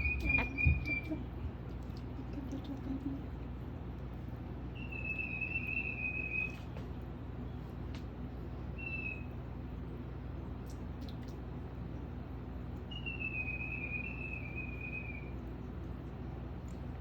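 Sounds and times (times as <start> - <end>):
parrot whistling: 0.0 - 1.2, 4.8 - 6.6, 8.8 - 9.3, 12.9 - 15.3
steady low hum: 0.0 - 17.0.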